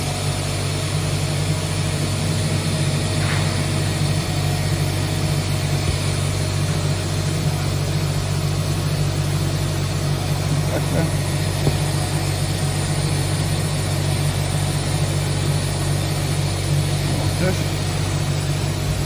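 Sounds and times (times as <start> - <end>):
machining centre humming: 0.0 - 19.0.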